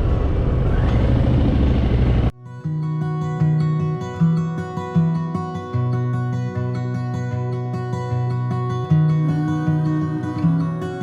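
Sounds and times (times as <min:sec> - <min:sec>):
guitar plucking rhythmic pattern: 0:02.4 - 0:11.0.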